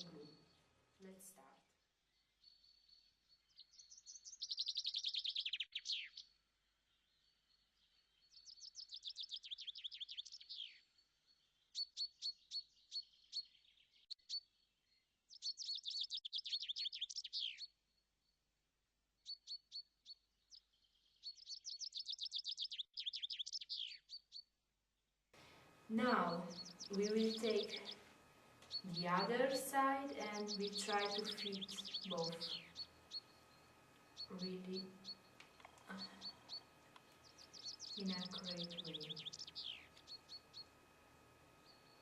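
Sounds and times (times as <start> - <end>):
songbird trilling: 2.5 - 6.2, 8.3 - 10.8, 15.3 - 17.7, 21.2 - 24.4, 26.1 - 28.0, 28.6 - 40.7.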